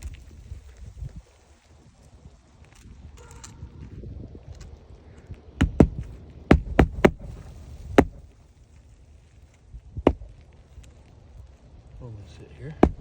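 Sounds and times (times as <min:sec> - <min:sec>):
hammer striking roofing nails: 0:05.6 - 0:08.2, 0:10.1 - 0:10.3, 0:12.8 - 0:13.0.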